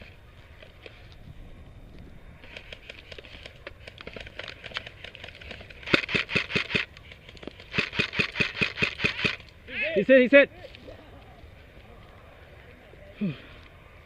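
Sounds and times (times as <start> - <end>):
airsoft guns firing: 2.4 - 6.9, 7.7 - 9.4.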